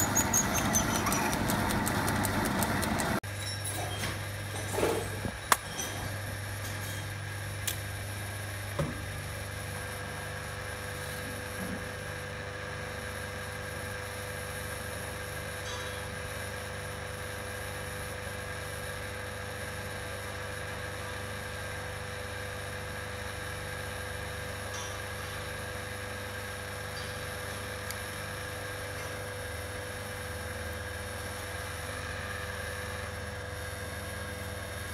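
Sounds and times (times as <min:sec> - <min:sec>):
metal lathe humming: 0:00.0 - 0:03.2
sharp clicks: 0:00.2 - 0:03.2.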